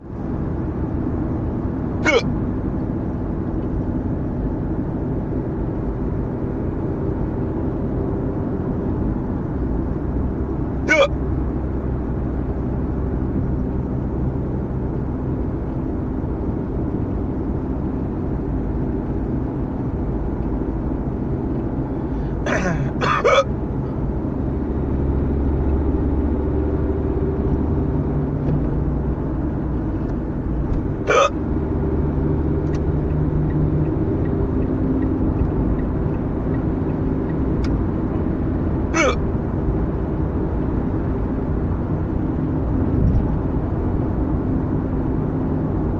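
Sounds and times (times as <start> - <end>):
car engine and road rumble: 0.0 - 45.9
person hiccupping: 2.0 - 2.3, 10.9 - 11.1, 22.5 - 23.5, 31.0 - 31.4, 39.0 - 39.2.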